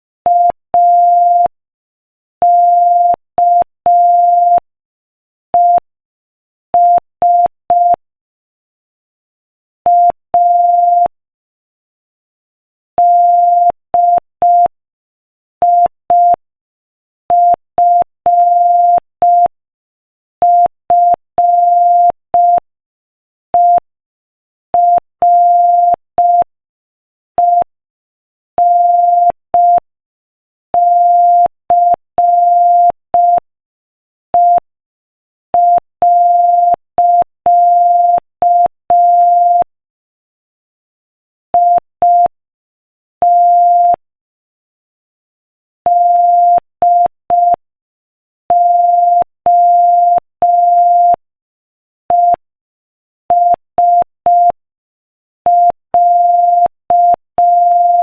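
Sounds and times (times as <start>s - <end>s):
morse code beeps: 13.0s - 14.7s, 17.3s - 19.5s, 20.4s - 22.6s, 24.8s - 26.5s, 28.6s - 29.8s, 30.8s - 33.4s, 34.4s - 34.6s, 35.6s - 39.7s, 41.6s - 42.3s, 43.2s - 44.0s, 45.9s - 47.6s, 48.5s - 51.2s, 52.1s - 52.4s, 53.3s - 54.6s, 55.5s - 58.0s.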